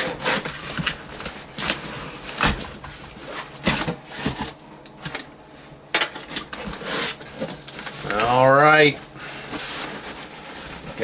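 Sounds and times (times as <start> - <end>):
cardboard box rustling and scraping: 6.8 - 11.0.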